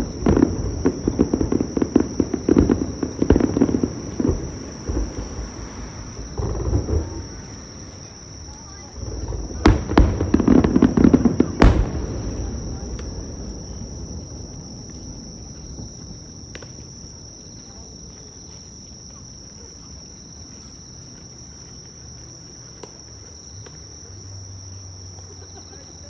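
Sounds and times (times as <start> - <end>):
faint distant pops: 0.0 - 17.1
firework burst rumble: 0.0 - 17.9
insects trilling: 0.0 - 26.0.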